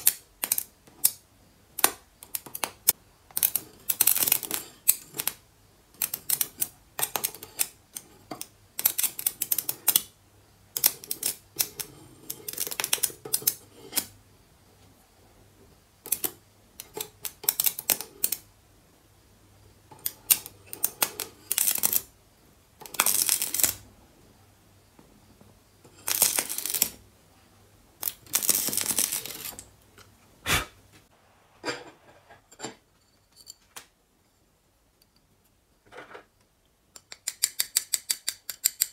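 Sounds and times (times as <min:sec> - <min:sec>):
faint mains hum: 0:00.0 - 0:37.3.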